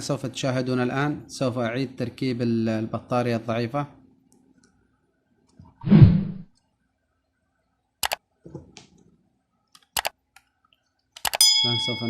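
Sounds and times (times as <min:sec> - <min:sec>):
sharp plastic clicks: 0:11.1 - 0:11.4.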